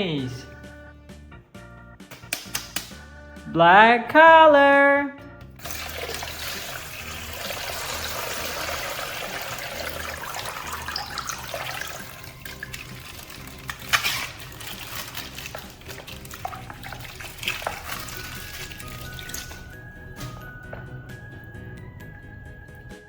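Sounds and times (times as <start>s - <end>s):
handling clicks: 2.1s - 3.0s
water pouring and splashing: 5.6s - 21.0s.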